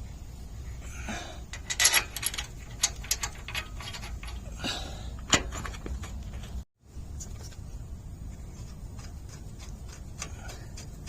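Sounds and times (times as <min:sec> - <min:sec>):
metal hardware clinking: 0:01.5 - 0:06.6.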